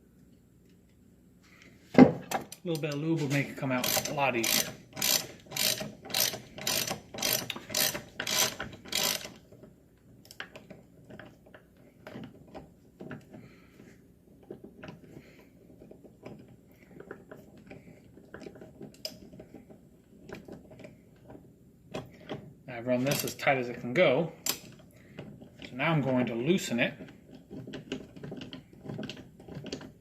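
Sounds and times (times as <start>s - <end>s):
ratchet wrench clicking: 3.7s - 9.4s.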